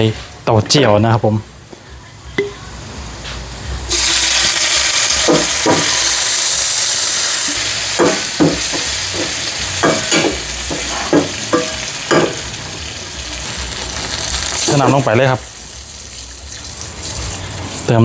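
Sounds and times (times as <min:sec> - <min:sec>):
food sizzling in hot oil: 0:03.5 - 0:18.0
spatula clanking against pan: 0:08.0 - 0:12.5.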